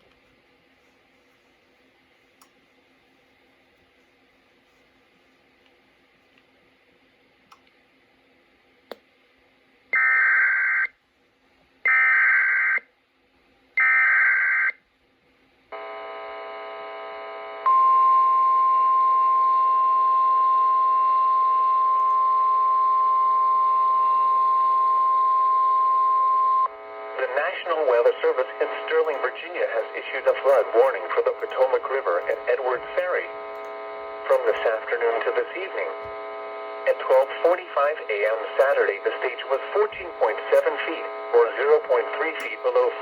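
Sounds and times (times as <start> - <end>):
weather radio alarm tone: 15.8 - 43.0.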